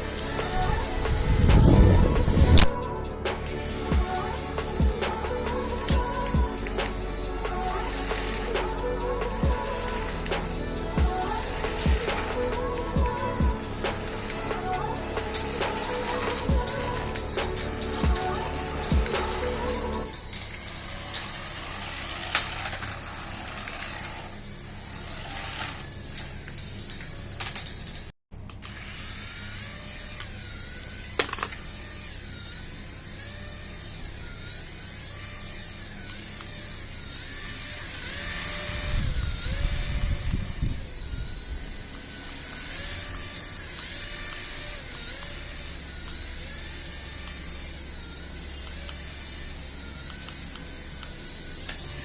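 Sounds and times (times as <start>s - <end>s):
low rumble: 0.0s - 21.1s
toy electric motor whining: 0.0s - 52.0s.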